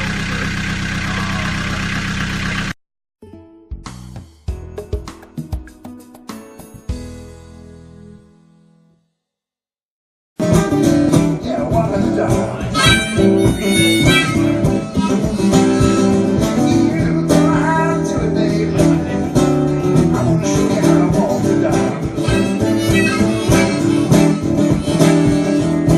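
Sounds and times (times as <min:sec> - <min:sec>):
blues music with harmonica and guitar: 0:10.4 - 0:25.9.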